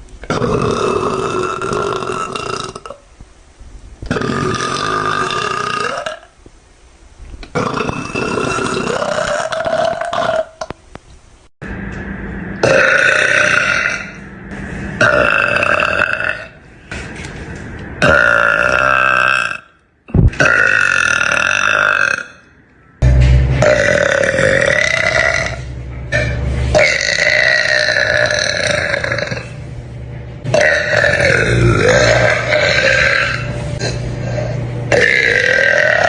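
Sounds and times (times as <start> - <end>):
woman burping: 18.0 - 22.4.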